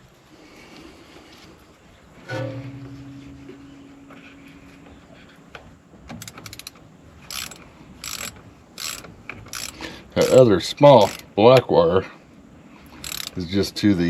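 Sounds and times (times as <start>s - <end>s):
metallic clang ringing: 2.3s - 5.2s
ratchet wrench clicking: 6.2s - 11.7s, 13.0s - 13.5s.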